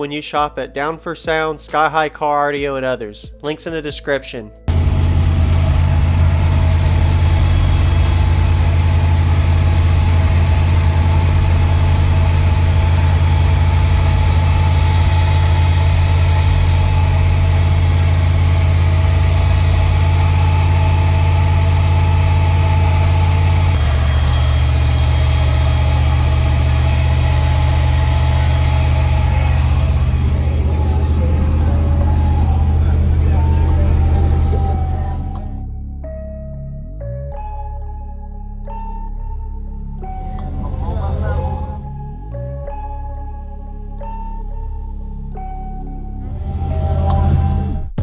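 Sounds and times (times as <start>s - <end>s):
subwoofers playing deep bass note: 4.7s - 35.7s, 40.0s - 42.9s, 46.3s - 48.0s.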